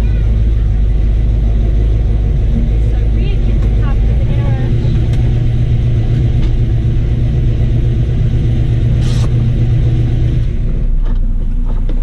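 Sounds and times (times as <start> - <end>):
car engine running: 0.0 - 12.0
short hiss: 9.0 - 9.4.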